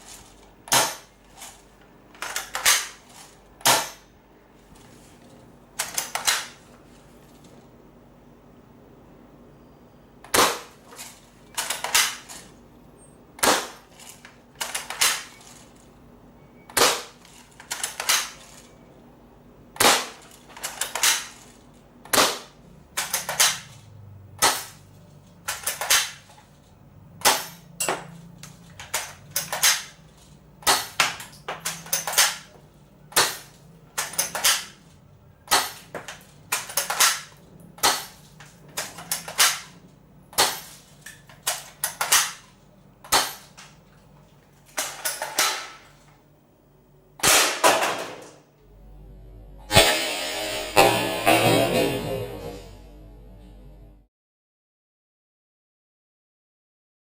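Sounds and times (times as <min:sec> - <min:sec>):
airsoft rifle shots: 0:00.7 - 0:01.1, 0:10.3 - 0:10.8, 0:13.4 - 0:13.8, 0:16.8 - 0:17.2, 0:19.8 - 0:21.4, 0:22.1 - 0:23.7, 0:25.5 - 0:26.2, 0:28.9 - 0:30.0, 0:33.1 - 0:34.8, 0:36.5 - 0:38.2, 0:38.8 - 0:39.7, 0:47.2 - 0:48.3, 0:49.7 - 0:52.0.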